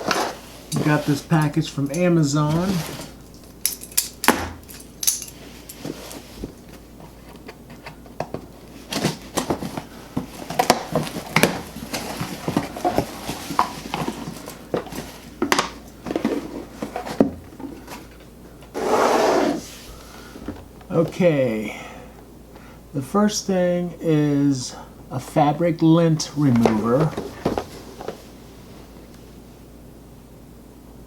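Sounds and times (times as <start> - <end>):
package handling clicks and scrapes: 5.6 - 18.8.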